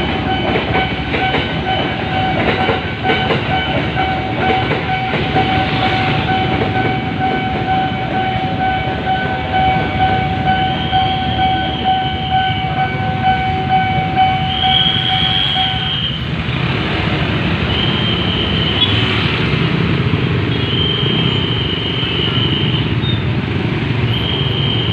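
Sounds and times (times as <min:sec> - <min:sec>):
pulsing higher warning tone: 0:00.0 - 0:16.2
steady high warning tone: 0:00.0 - 0:16.3
passing train rumble: 0:00.0 - 0:24.9.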